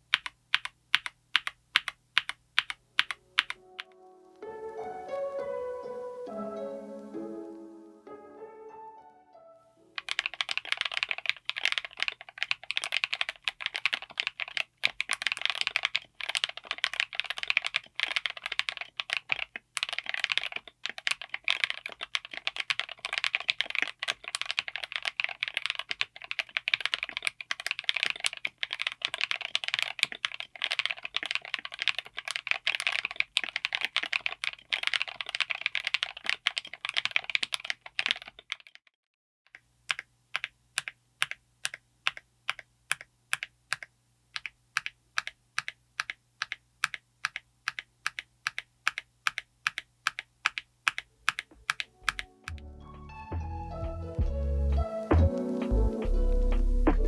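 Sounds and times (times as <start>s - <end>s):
fast typing on mechanical keyboard: 0.0s - 3.6s, 10.0s - 38.8s, 39.8s - 52.6s.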